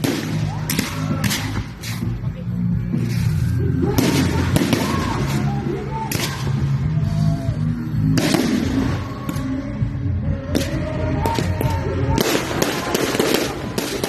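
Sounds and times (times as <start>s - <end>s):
fireworks bangs: 0.0s - 2.1s, 3.8s - 5.5s, 8.1s - 9.6s, 10.5s - 14.0s
low rumble: 0.0s - 14.0s.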